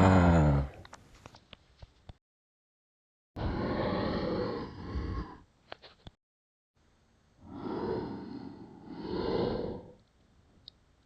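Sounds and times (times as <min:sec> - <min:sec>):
deep breathy dinosaur exhale: 0:03.4 - 0:05.5, 0:07.4 - 0:10.0.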